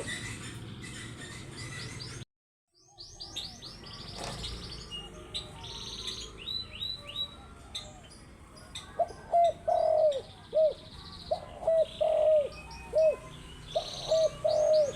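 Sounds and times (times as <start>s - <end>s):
small birds chirping: 0.0s - 14.9s
dove cooing: 8.9s - 14.9s.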